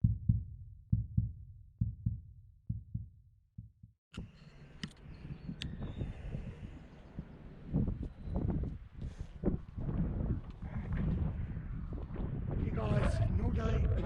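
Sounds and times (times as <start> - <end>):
heartbeat thumps: 0.0 - 4.0, 7.7 - 14.0
sharp clicks: 4.2 - 6.6.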